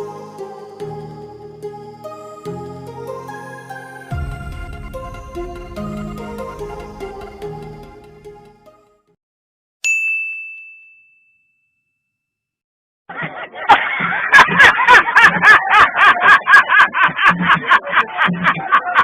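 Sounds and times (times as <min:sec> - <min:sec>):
sweeping pitched sounds: 0:04.1 - 0:08.7
bright ding: 0:09.8 - 0:12.0.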